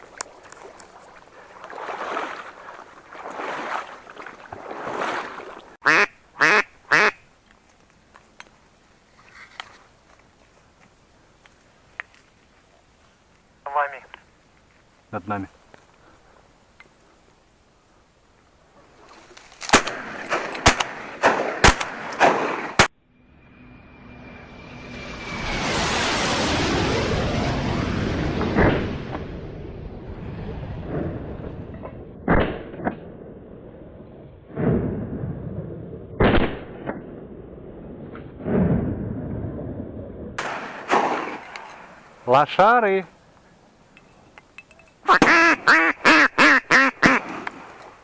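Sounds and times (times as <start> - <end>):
shotgun shots: 19.7 - 22.9, 40.4 - 41.9.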